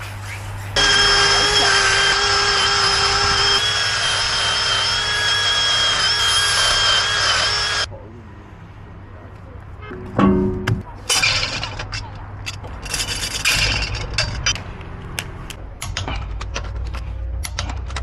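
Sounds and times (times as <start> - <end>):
power tool high whine: 0.8 - 7.9.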